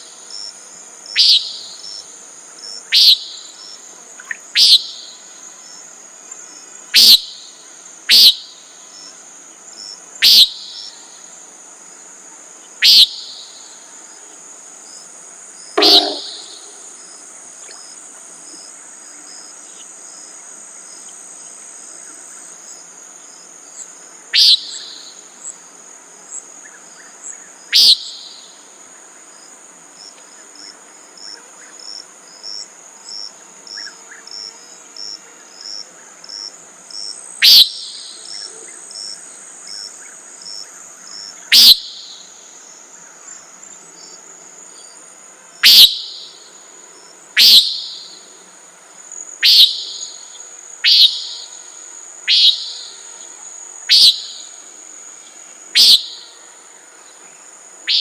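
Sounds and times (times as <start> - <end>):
insects trilling: 0.0 - 58.0
nighthawk buzzy peent call: 1.2 - 1.8, 2.9 - 3.4, 4.6 - 5.0, 7.0 - 7.4, 8.1 - 8.5, 10.2 - 10.9, 12.8 - 13.6, 15.8 - 16.9, 24.4 - 25.1, 27.8 - 28.4, 37.4 - 38.5, 41.5 - 42.3, 45.6 - 46.4, 47.4 - 48.3, 49.4 - 54.6, 55.8 - 56.4.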